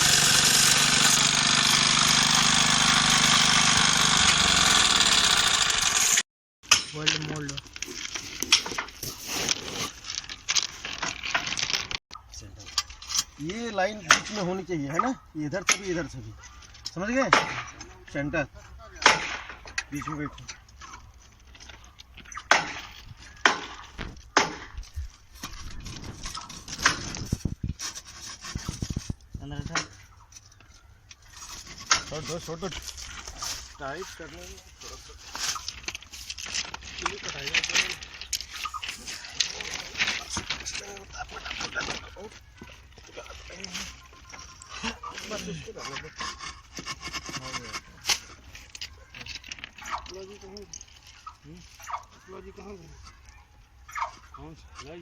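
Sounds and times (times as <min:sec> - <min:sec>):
small engine running: 0:00.0 - 0:06.2.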